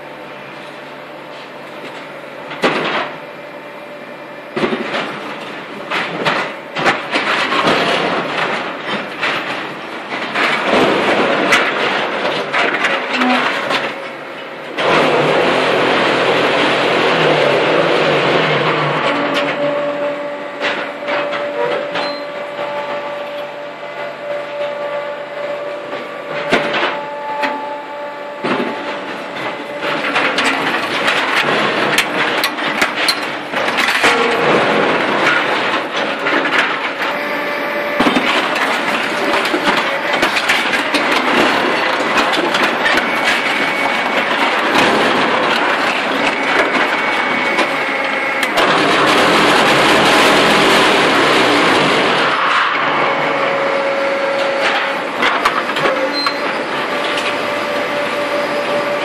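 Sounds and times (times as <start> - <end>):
machine hum: 0.0 - 59.0
paving-block machine clattering: 0.0 - 59.0.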